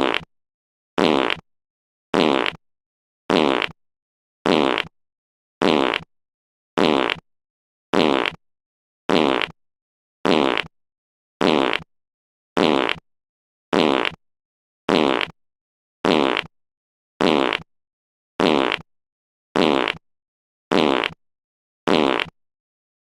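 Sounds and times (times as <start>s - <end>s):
short buzzing fart sound: 0.0s - 0.3s, 1.0s - 1.4s, 2.1s - 2.6s, 3.3s - 3.8s, 4.4s - 4.9s, 5.6s - 6.1s, 6.8s - 7.2s, 7.9s - 8.4s, 9.1s - 9.6s, 10.2s - 10.7s, 11.4s - 11.9s, 12.6s - 13.0s, 13.7s - 14.2s, 14.9s - 15.4s, 16.0s - 16.5s, 17.2s - 17.7s, 18.4s - 18.9s, 19.6s - 20.0s, 20.7s - 21.2s, 21.9s - 22.4s.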